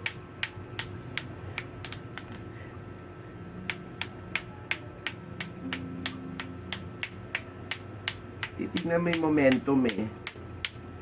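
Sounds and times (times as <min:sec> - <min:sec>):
clacker balls clacking: 0:00.0 - 0:02.4.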